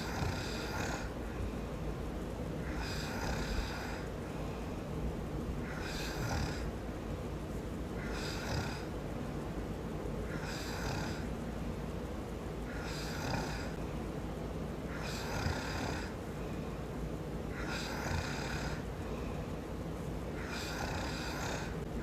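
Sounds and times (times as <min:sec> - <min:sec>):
man snoring: 0:00.0 - 0:01.2, 0:02.6 - 0:04.1, 0:05.6 - 0:06.7, 0:08.0 - 0:08.9, 0:10.3 - 0:11.3, 0:12.7 - 0:13.8, 0:14.9 - 0:16.2, 0:17.5 - 0:18.9, 0:20.4 - 0:21.8
low background hum: 0:00.0 - 0:22.0.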